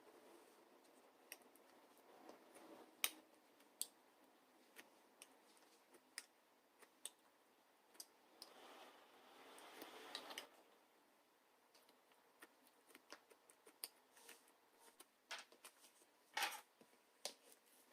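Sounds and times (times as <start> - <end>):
soft rustle: 4.5 - 6.2, 13.8 - 17.9.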